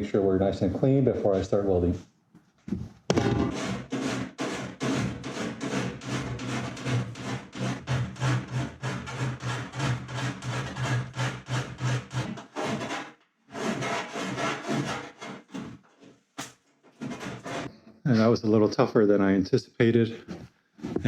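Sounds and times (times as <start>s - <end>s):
file rasping on aluminium sheet: 3.4s - 15.8s, 16.9s - 17.7s.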